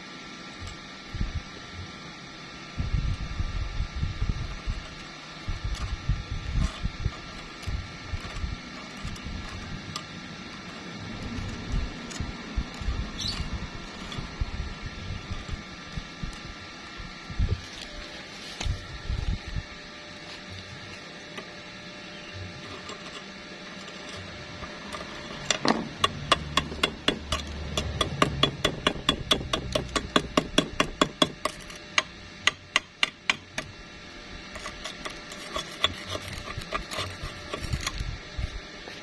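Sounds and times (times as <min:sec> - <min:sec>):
hammer tapping metal: 0:25.5 - 0:33.7.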